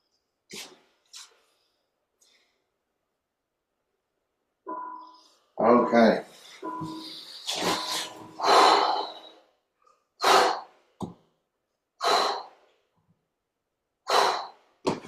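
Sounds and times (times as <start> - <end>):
person breathing hard: 6.3 - 9.5, 10.2 - 10.8, 12.0 - 12.7, 14.1 - 14.8.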